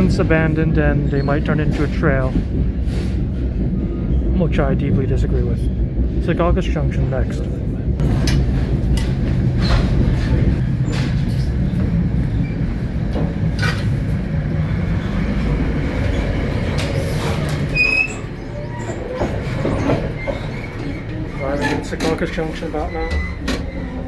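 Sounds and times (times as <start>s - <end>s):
train low rumble: 0.0s - 24.0s
wheel squeal: 16.0s - 24.0s.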